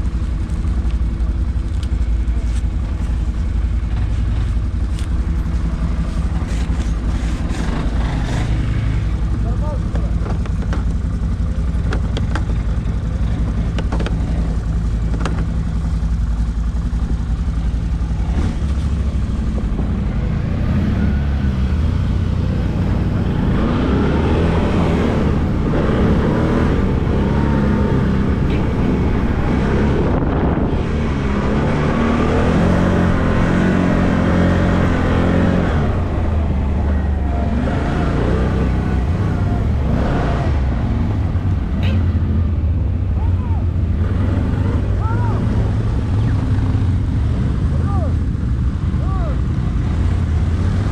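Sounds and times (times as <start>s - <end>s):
atv engine running: 0.0s - 50.9s.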